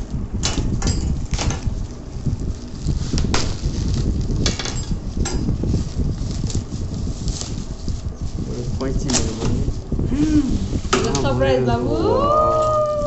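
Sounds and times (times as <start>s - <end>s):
low handling rumble: 0.0s - 13.0s
plastic packaging crinkling: 1.3s - 9.8s.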